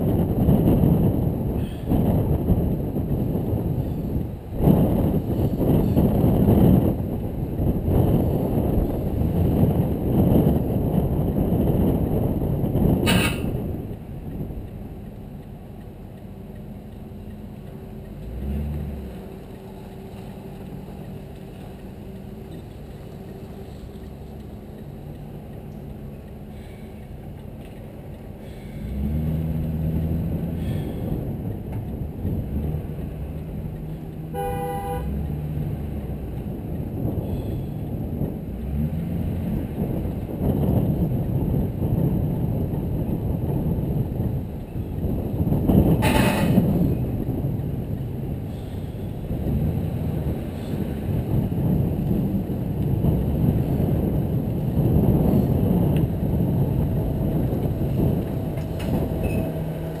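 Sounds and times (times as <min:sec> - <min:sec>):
road noise: 0:00.0 - 1:00.0
vehicle engine driving: 0:00.0 - 1:00.0
car horn toot: 0:34.3 - 0:35.2, 0:46.0 - 0:46.6.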